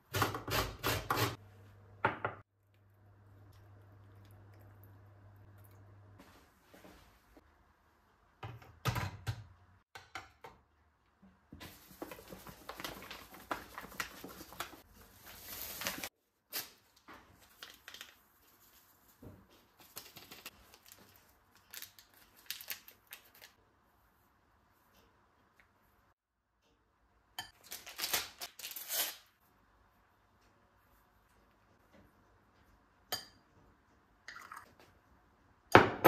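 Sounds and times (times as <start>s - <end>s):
utensils and packaging handled: 11.6s - 23.6s, 27.6s - 29.3s.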